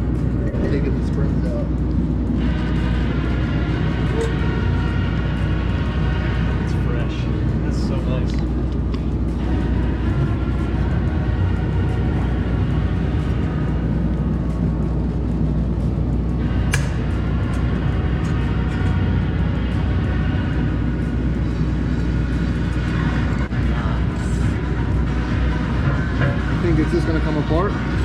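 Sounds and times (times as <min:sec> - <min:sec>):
background music: 0:00.0 - 0:28.0
low rumble: 0:00.0 - 0:28.0
sharp click: 0:16.7 - 0:17.0.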